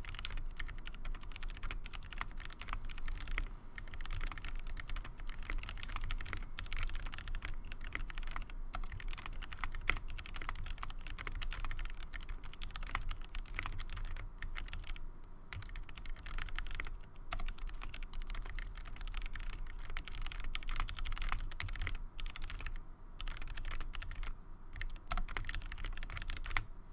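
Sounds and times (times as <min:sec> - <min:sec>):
mechanical keyboard typing: 0:00.0 - 0:26.7.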